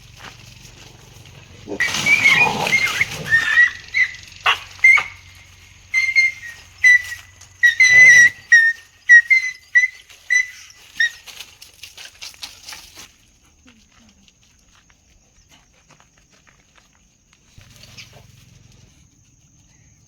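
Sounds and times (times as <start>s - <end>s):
dog yelping: 1.6s - 11.3s.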